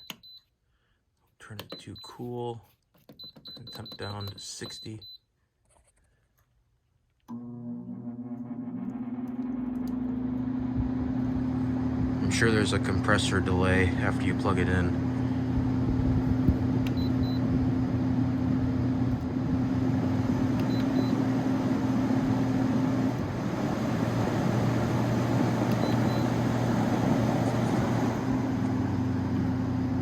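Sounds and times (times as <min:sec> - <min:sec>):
air conditioner fan rushing air: 0:10.0 - 0:30.0.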